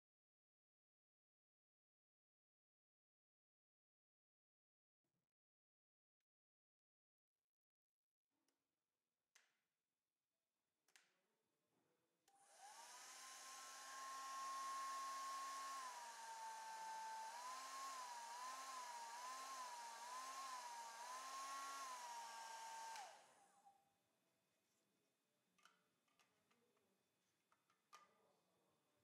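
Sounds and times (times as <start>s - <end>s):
hair dryer running: 12.4s - 23.5s.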